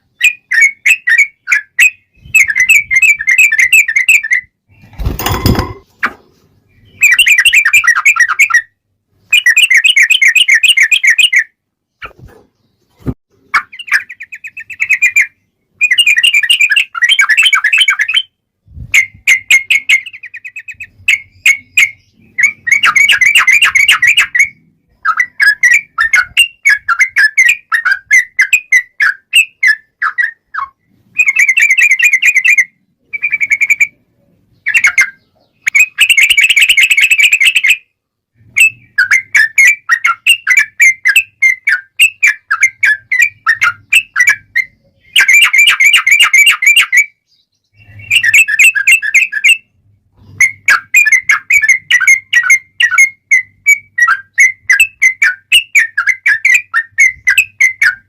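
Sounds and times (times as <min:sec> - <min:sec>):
bird singing rolling trills: 0:00.0 - 0:05.8, 0:06.6 - 0:18.4, 0:19.0 - 0:58.0
sharp knocks: 0:05.0 - 0:06.2.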